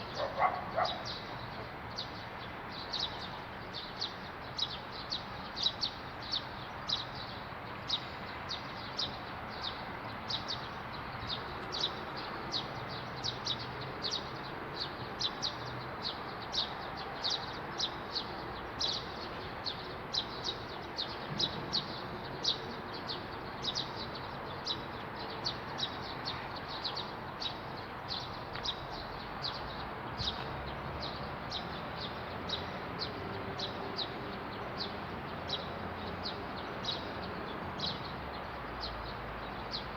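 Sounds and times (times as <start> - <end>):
bird chirping: 0.0 - 1.7.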